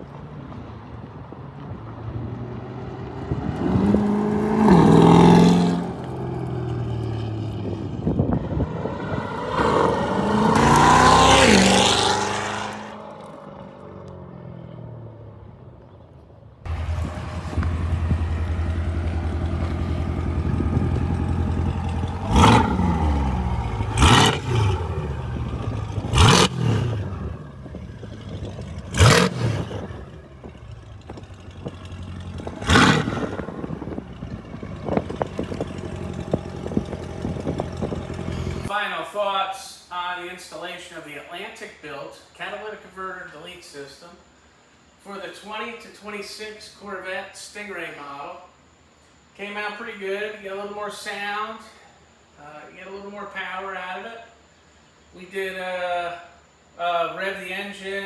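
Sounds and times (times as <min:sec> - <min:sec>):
sports car engine passing by: 0:00.1 - 0:38.7
car engine revving: 0:02.2 - 0:15.7, 0:16.7 - 0:38.7
car engine idling: 0:13.3 - 0:38.7.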